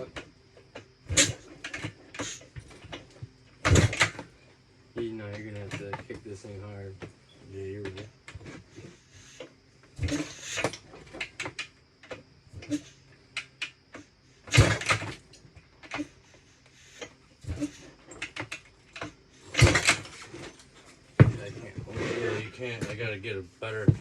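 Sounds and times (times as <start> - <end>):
engine turning over on kick-start: 3.7 - 4.2, 14.5 - 15.2, 19.5 - 20.4
kick lever clatter and clicks: 18.2 - 20.1.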